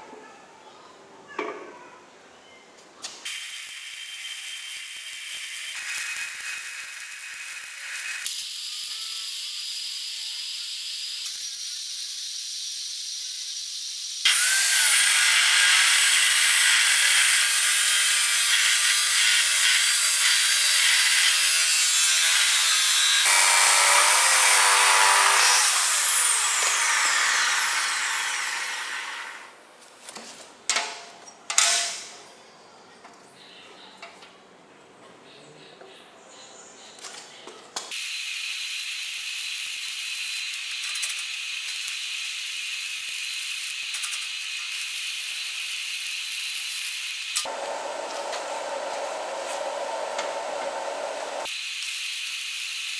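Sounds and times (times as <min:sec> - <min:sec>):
power tool running: 0:14.3 - 0:29.6, 0:47.4 - 0:51.5.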